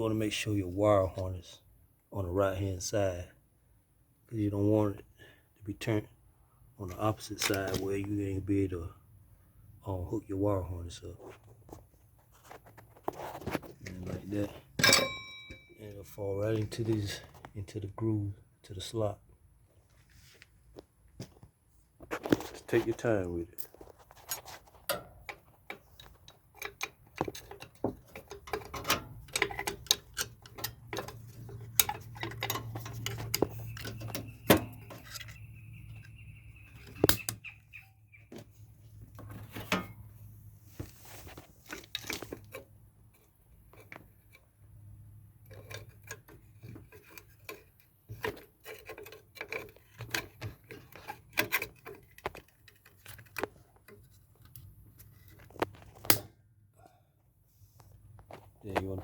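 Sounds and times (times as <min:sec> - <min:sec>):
clinks and taps of parts handled: 0:14.6 - 0:15.9, 0:23.6 - 0:35.4.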